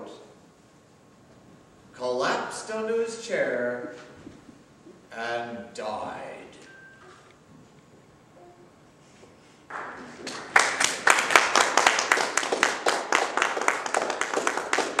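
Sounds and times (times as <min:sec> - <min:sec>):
audience applause: 0:09.7 - 0:15.0
close hands clapping: 0:09.7 - 0:15.0.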